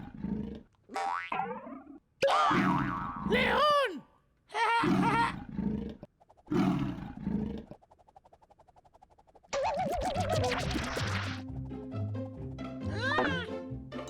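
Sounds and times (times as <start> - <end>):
cartoon lion roars: 0.0 - 0.7, 2.2 - 3.8, 4.6 - 7.8
warbling sound effect: 6.0 - 11.8.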